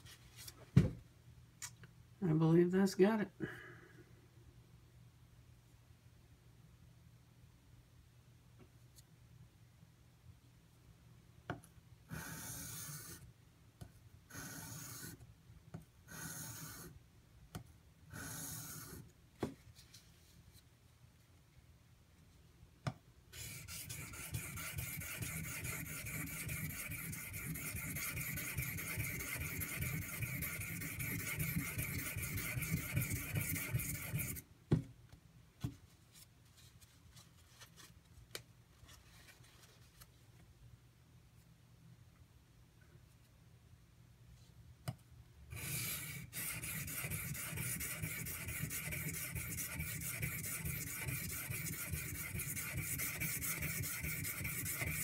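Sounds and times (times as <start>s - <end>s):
knife scraping on whetstone: 23.4s - 34.4s, 45.5s - 55.0s.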